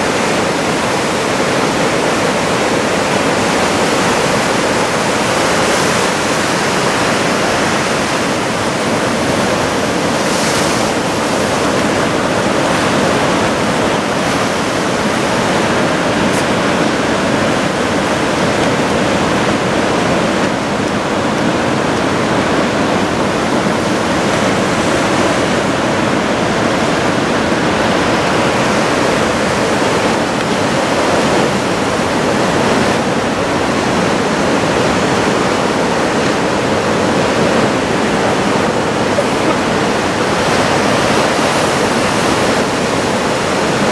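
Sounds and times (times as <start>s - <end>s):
heavy surf roaring: 0.0s - 43.9s.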